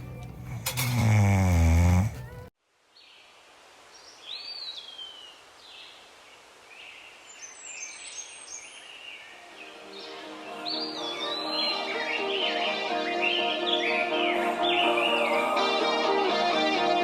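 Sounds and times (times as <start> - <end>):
low drawn-out snore-like sound: 0.5 - 2.4.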